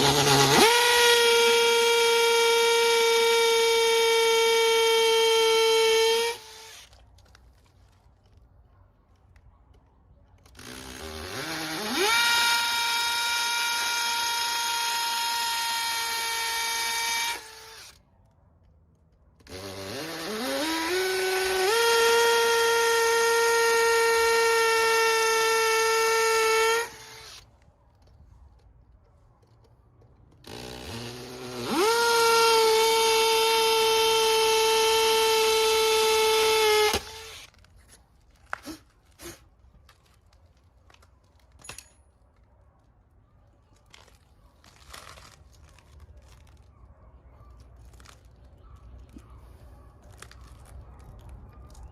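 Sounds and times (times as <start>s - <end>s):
electric drill boring into brick: 0.0s - 7.0s, 10.4s - 18.0s, 19.4s - 27.5s, 30.4s - 37.6s.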